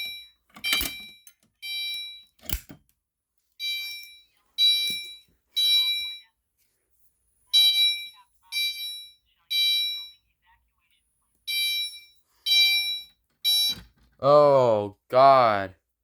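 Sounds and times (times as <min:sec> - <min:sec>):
fire alarm electronic chime: 0:00.0 - 0:02.4, 0:03.6 - 0:06.2.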